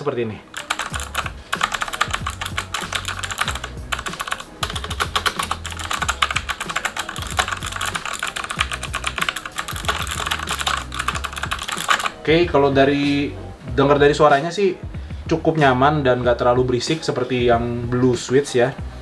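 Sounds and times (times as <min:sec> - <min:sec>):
fast keyboard typing: 0:00.5 - 0:12.2.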